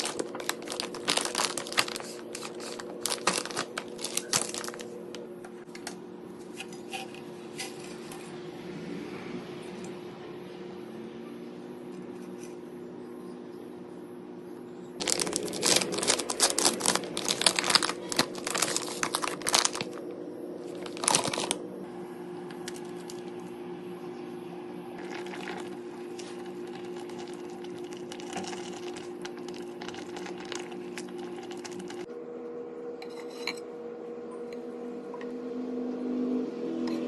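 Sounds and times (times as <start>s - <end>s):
packaging crinkling: 0.0s - 5.0s, 15.0s - 21.6s, 25.0s - 32.1s
steady low hum: 0.0s - 37.0s.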